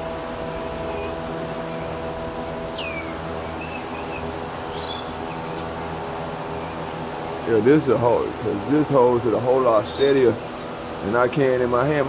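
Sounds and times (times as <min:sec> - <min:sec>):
steady machine hum: 0:00.0 - 0:12.0
soft bird chirps: 0:00.9 - 0:06.9, 0:09.8 - 0:12.0
bird whistling: 0:02.1 - 0:05.6.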